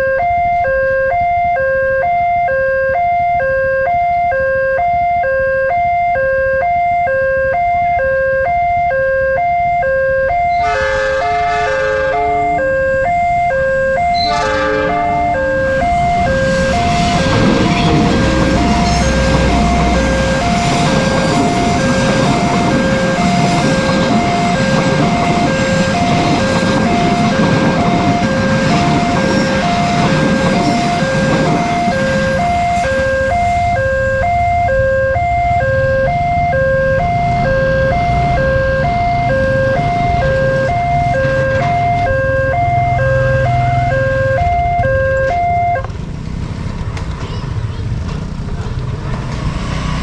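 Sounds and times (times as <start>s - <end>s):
level crossing alarm ringing: 0.0s - 45.9s
train passing with rail noise: 9.4s - 50.0s
train horn: 10.3s - 13.0s, 13.6s - 34.4s.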